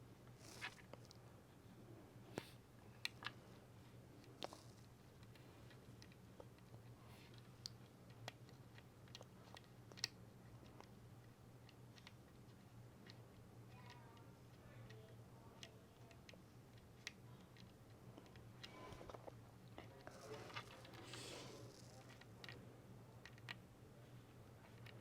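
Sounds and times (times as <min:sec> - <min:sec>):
low steady hum: 0:00.0 - 0:25.0
magnet pieces clicking together: 0:07.6 - 0:10.9.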